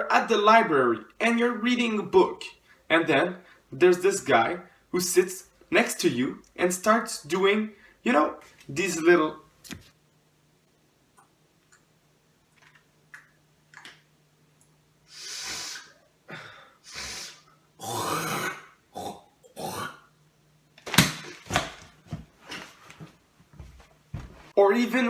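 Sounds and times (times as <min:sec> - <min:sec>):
person snorting: 0:15.1 - 0:20.1.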